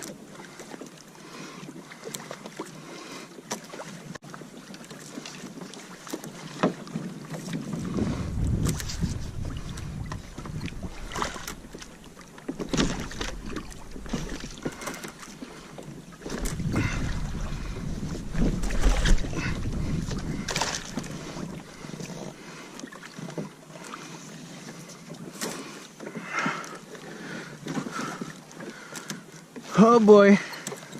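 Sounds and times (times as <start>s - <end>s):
water sloshing around kayak hull: 0.0s - 30.9s
wind buffeting microphone: 7.5s - 22.4s.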